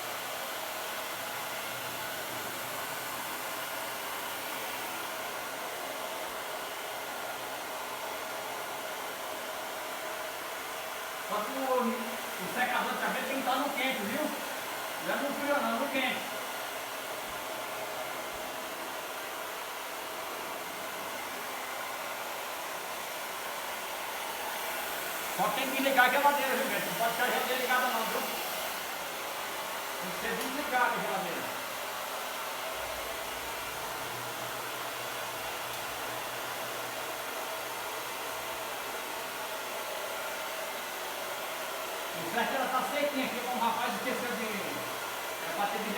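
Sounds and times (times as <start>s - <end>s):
hair dryer blowing: 0.0s - 45.9s.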